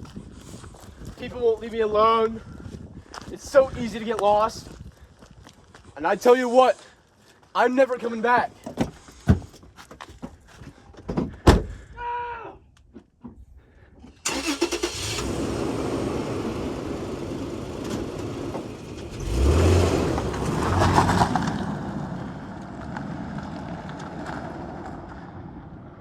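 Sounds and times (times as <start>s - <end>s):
car engine revving and pulling away: 14.2s - 26.0s.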